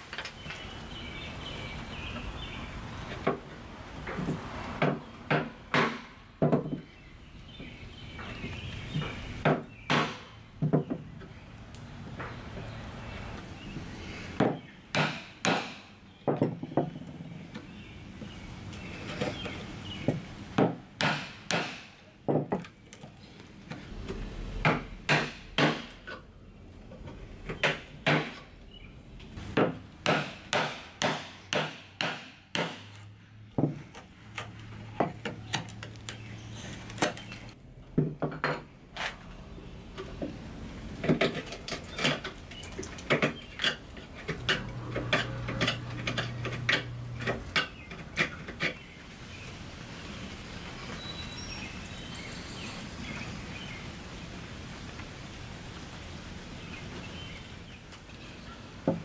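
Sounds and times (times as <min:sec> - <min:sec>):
wood being struck: 0:04.8 - 0:06.9, 0:09.4 - 0:11.1, 0:14.4 - 0:17.0, 0:20.6 - 0:22.6, 0:24.6 - 0:26.2, 0:29.6 - 0:33.0.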